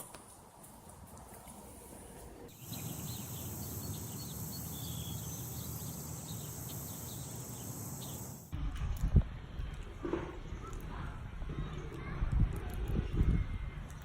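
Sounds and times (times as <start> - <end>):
bird chirps: 2.5 - 8.5
high insect buzz: 2.6 - 8.5.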